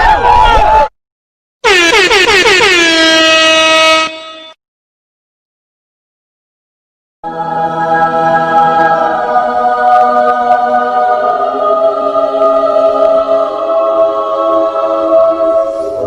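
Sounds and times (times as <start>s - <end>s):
choir singing held chords: 7.2s - 16.0s.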